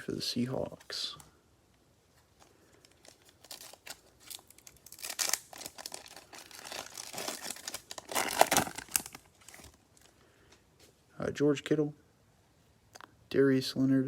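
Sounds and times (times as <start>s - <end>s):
plastic wrapper tearing and crinkling: 2.7s - 10.1s.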